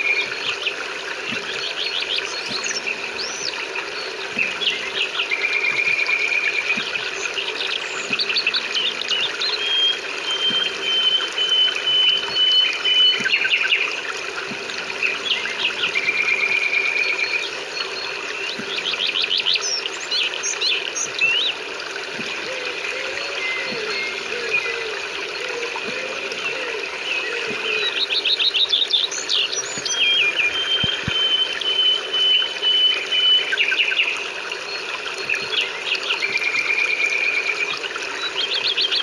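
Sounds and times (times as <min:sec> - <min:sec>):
songbirds singing: 0:00.0 - 0:39.0.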